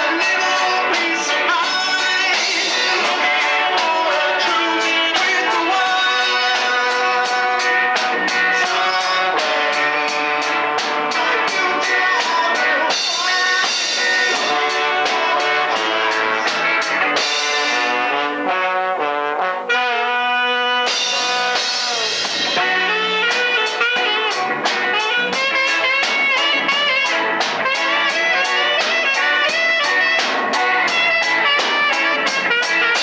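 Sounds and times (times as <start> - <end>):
drum kit rhythm: 0.0 - 33.0
reggae band playing: 0.0 - 33.0
saxophone: 0.0 - 33.0
trombone: 0.0 - 33.0.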